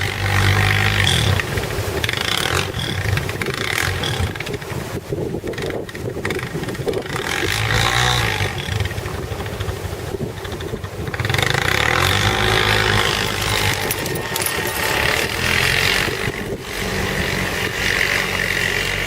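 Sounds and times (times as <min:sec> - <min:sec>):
atv engine revving: 0:00.0 - 0:19.0.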